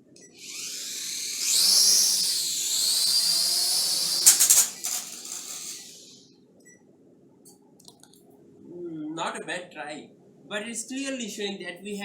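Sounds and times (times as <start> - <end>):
toy drone propellers whining: 0.4 - 6.2.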